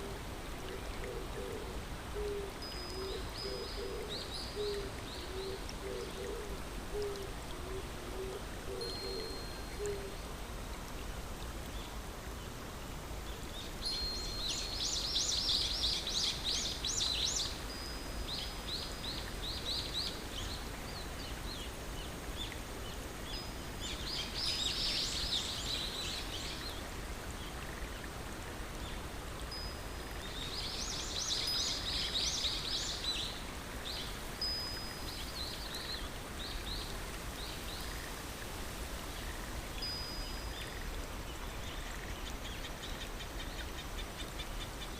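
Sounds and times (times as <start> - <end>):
flowing water: 0.0 - 44.9.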